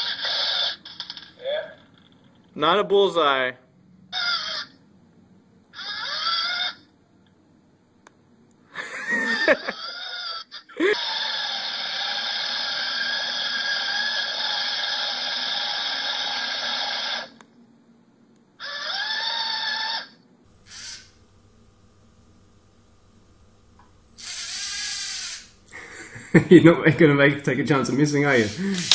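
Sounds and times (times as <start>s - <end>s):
servo motors whining: 20.5s - 26.4s, 28.2s - 28.9s.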